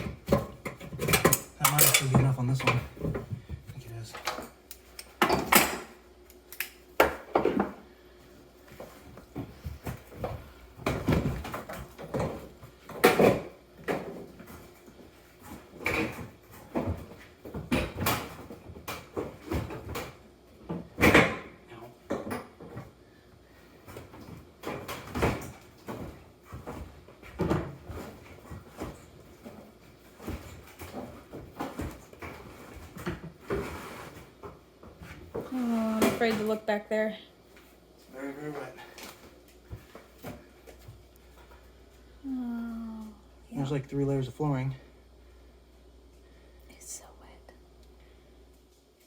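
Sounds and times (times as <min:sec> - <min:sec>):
tools and heater clunking: 0:00.0 - 0:06.0.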